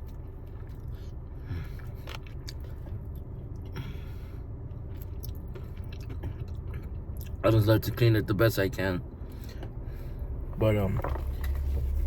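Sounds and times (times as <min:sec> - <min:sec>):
person chewing chicken wing: 0:04.8 - 0:07.4.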